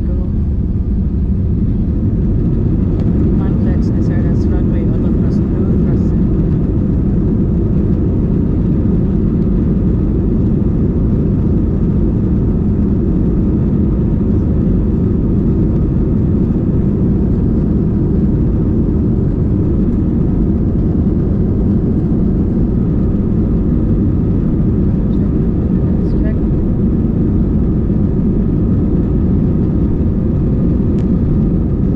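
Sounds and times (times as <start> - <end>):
jet engine rumble in cabin: 0.0 - 31.9.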